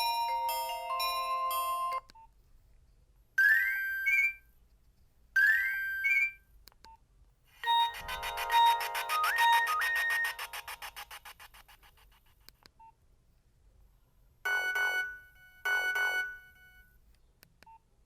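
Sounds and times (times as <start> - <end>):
phone ringtones: 7.6 - 11.5, 14.5 - 16.9.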